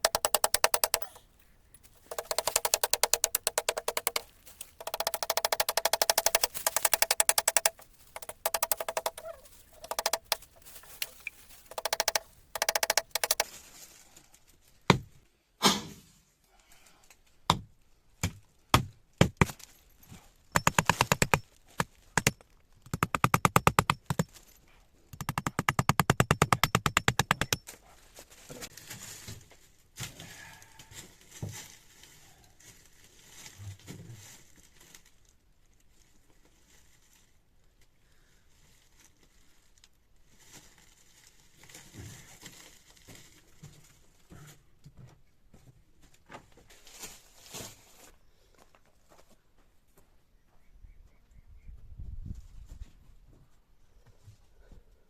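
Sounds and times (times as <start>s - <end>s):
rapid rasping on wood: 0.0s - 1.1s, 2.0s - 4.2s, 4.8s - 10.6s
sharp knocks on wood: 2.1s - 4.2s, 4.8s - 10.6s, 11.7s - 13.4s.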